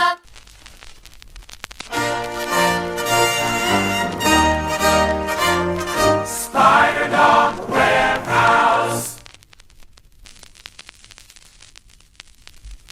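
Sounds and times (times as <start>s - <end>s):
crackling static: 0.0s - 12.9s
sung pop jingle with choir: 3.7s - 9.2s.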